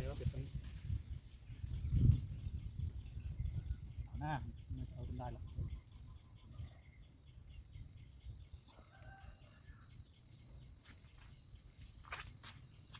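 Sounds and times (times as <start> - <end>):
insects trilling: 0.0 - 12.9.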